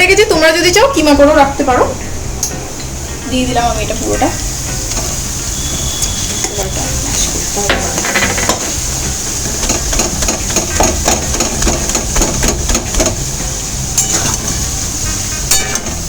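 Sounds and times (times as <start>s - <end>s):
meat sizzling: 0.0s - 16.0s
spatula knocking and scraping pan: 4.1s - 16.0s.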